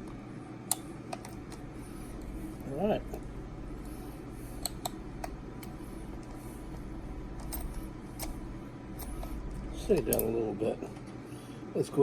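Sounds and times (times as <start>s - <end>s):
steady low hum: 0.0s - 12.0s
light metallic clicks and taps: 4.6s - 6.4s, 7.4s - 8.4s.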